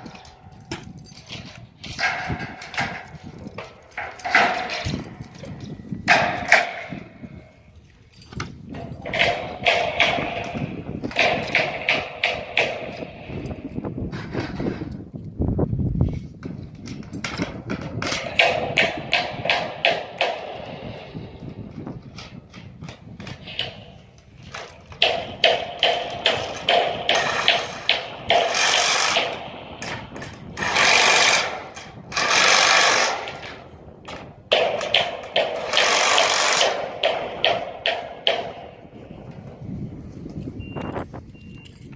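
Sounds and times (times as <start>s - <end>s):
metal knocks and clanks: 0.0s - 15.2s, 16.3s - 40.6s
power tool bursts: 26.4s - 30.0s, 30.6s - 33.5s, 35.5s - 36.9s.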